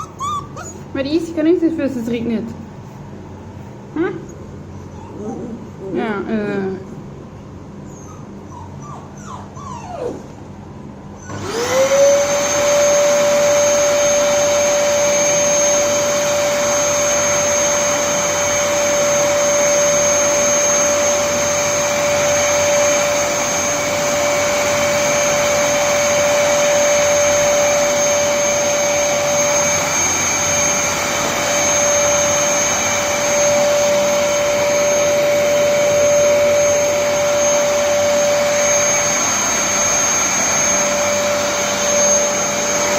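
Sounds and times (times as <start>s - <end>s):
dog whimpering: 0.0s - 1.0s, 4.0s - 5.8s, 7.8s - 10.4s, 11.2s - 11.8s
vacuum cleaner whining: 11.2s - 42.9s.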